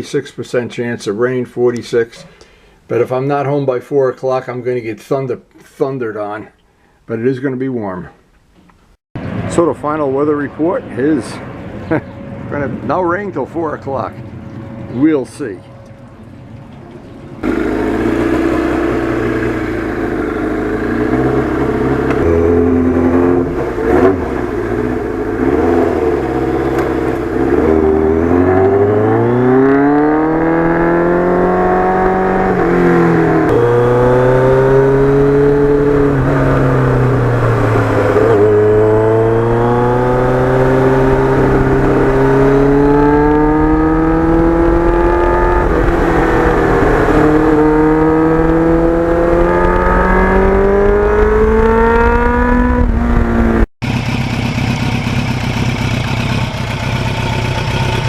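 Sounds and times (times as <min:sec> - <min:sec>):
motorcycle engine accelerating: 0:17.4 - 0:58.0.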